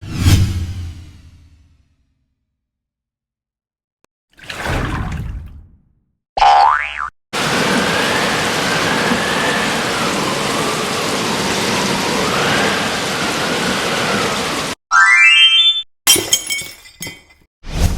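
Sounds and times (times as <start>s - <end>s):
heavy rain rush: 7.4s - 14.8s.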